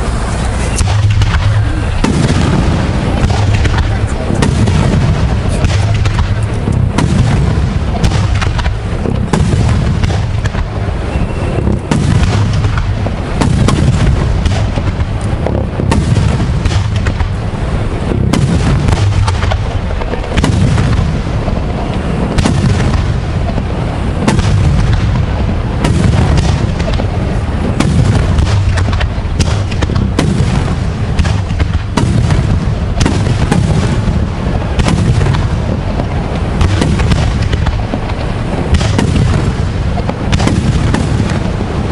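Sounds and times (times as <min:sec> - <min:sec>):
fireworks booms and bangs: 0:00.0 - 0:41.9.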